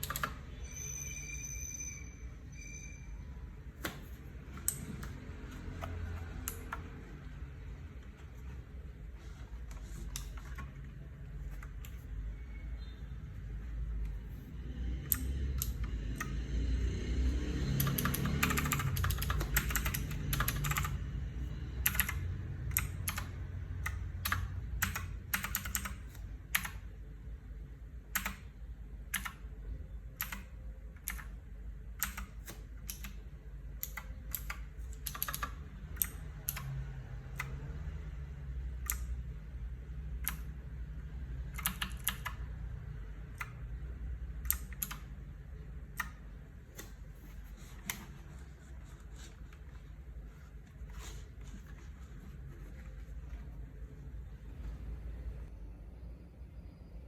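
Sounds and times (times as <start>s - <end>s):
clicky mechanical keyboard typing: 0.0s - 0.8s, 3.8s - 7.2s, 9.7s - 12.1s, 15.0s - 16.5s, 17.7s - 21.2s, 21.8s - 26.9s, 28.1s - 28.5s, 29.1s - 29.6s, 30.2s - 37.7s, 38.8s - 39.2s, 40.1s - 40.6s, 41.4s - 42.5s, 44.3s - 48.2s.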